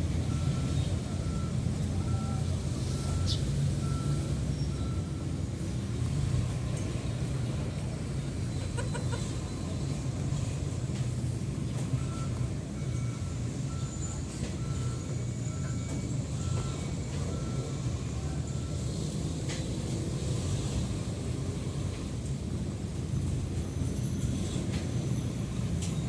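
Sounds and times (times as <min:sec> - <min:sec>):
vehicle engine rumbling: 0:00.0 - 0:26.0
reversing beeper beeping: 0:00.2 - 0:05.6, 0:11.8 - 0:19.2
chirps: 0:03.2 - 0:03.5.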